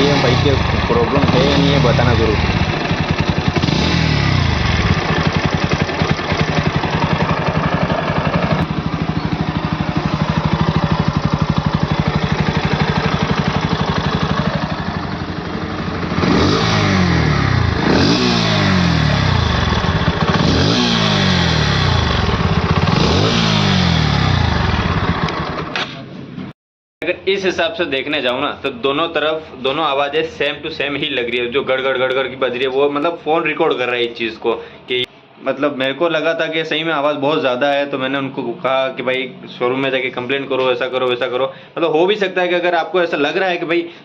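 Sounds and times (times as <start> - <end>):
motorcycle engine idling and revving: 0.0 - 26.5.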